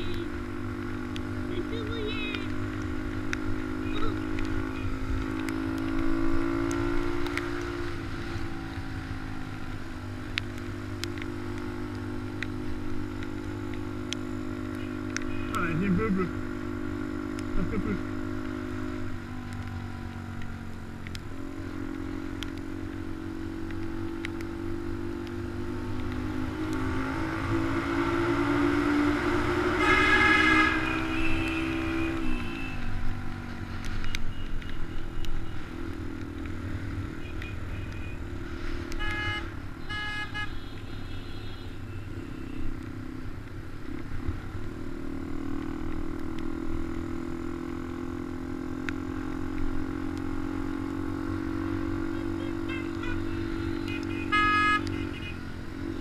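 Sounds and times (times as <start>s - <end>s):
horn toots: 29.6s - 33.0s, 38.9s - 42.7s, 52.0s - 56.0s.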